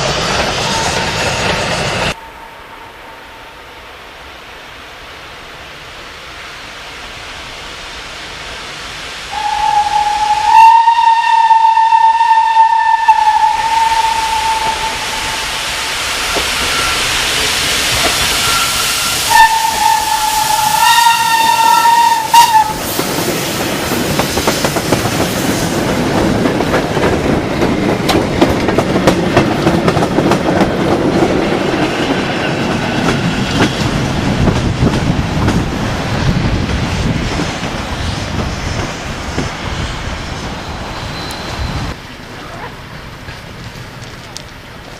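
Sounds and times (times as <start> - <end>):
train wagons rumbling and clattering: 0.0 - 2.4, 13.2 - 44.9
steam whistle blasts: 9.3 - 23.0.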